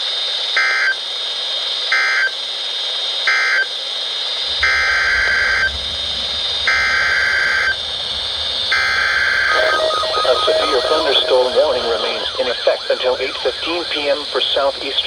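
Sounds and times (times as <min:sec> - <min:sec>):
harsh data buzz bursts: 0:04.4 - 0:15.0
low rumble: 0:04.4 - 0:15.0
radio hiss: 0:08.6 - 0:15.0.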